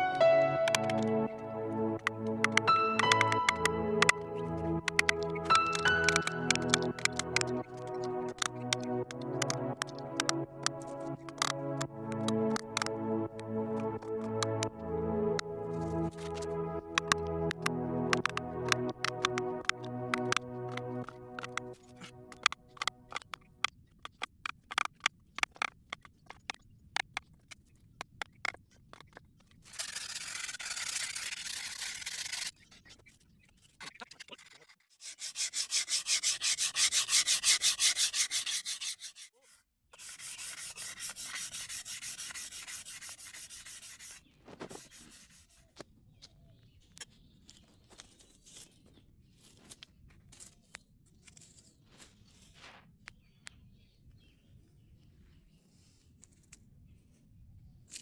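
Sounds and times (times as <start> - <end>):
light taps and clicks: 16.0 - 29.2
sandpaper sanding wood: 29.7 - 32.5, 35.0 - 39.4, 40.0 - 45.7.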